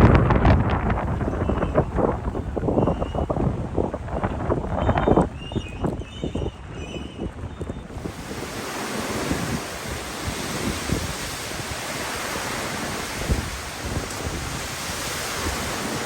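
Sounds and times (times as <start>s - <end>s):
wind buffeting microphone: 0.0s - 16.0s
broad rushing hiss: 8.0s - 16.0s.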